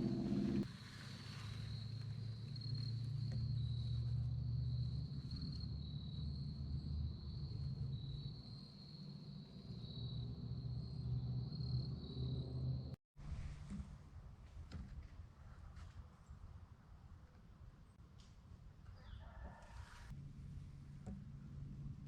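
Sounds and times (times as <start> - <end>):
crickets trilling: 1.4 - 12.9.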